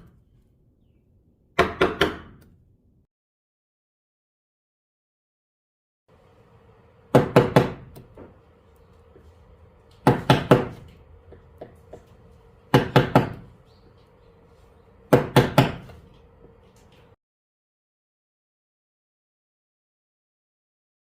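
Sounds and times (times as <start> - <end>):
mallet striking chisel into wood: 1.6 - 2.5, 7.1 - 8.3, 10.0 - 10.8, 12.7 - 13.5, 15.1 - 15.9.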